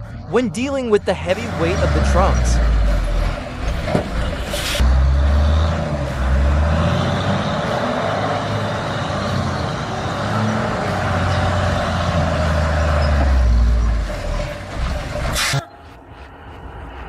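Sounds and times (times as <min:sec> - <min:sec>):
heavy vehicle engine rumbling: 0:00.0 - 0:17.0.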